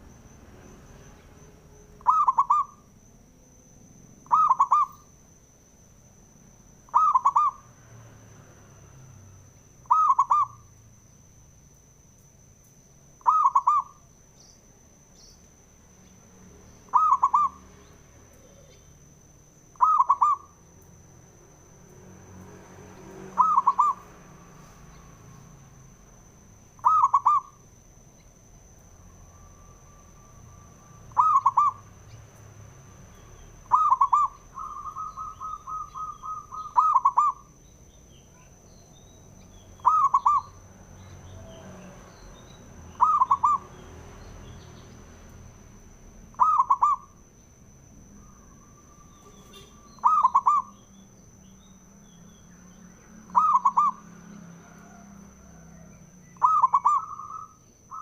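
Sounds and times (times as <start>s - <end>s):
dove cooing: 2.0s - 2.9s, 4.2s - 5.0s, 6.9s - 7.7s, 9.8s - 10.6s, 13.2s - 14.0s, 16.9s - 17.6s, 19.7s - 20.5s, 23.4s - 24.1s, 26.8s - 27.6s, 31.0s - 31.8s, 33.7s - 37.5s, 39.8s - 40.5s, 43.0s - 43.8s, 46.3s - 47.1s, 48.2s - 50.8s, 53.3s - 54.0s, 54.6s - 58.0s.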